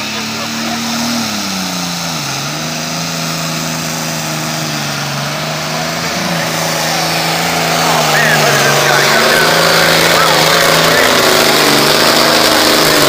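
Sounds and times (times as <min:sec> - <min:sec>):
tractor diesel engine running hard: 0:00.0 - 0:13.0.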